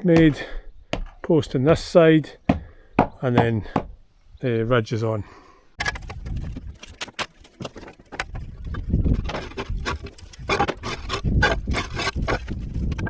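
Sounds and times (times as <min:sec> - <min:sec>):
timber knocks and clatter: 0:05.8 - 0:13.0.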